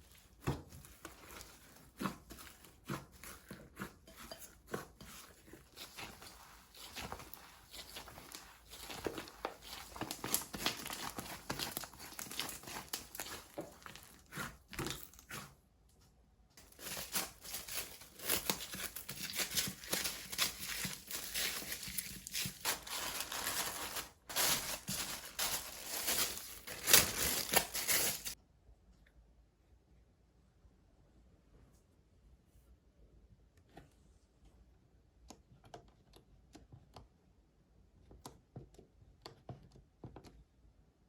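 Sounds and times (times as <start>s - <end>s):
slime crackling and popping: 7.8s - 15.3s.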